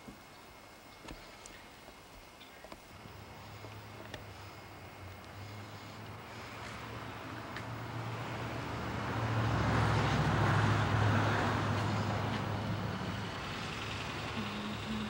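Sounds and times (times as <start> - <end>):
car passing by: 5.4 - 15.0.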